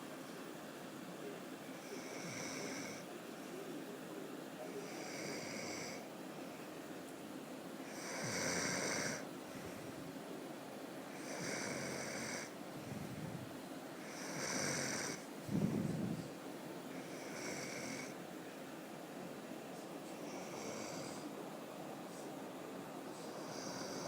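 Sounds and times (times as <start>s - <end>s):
person snoring: 8.0s - 9.2s, 11.2s - 12.5s, 14.1s - 16.1s, 17.1s - 18.1s, 23.4s - 24.0s.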